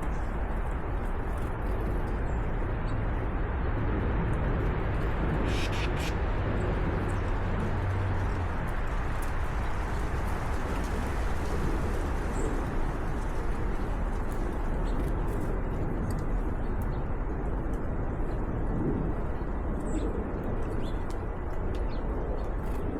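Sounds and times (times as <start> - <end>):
steady rushing background: 0.0 - 22.9
high bird chirp: 5.4 - 6.2.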